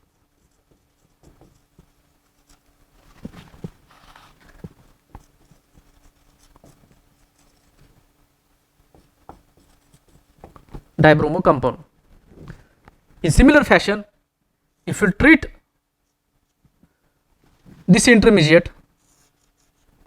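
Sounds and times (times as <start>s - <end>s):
faint steady hum: 0.0s - 20.0s
pen writing: 0.8s - 8.1s, 8.9s - 10.8s.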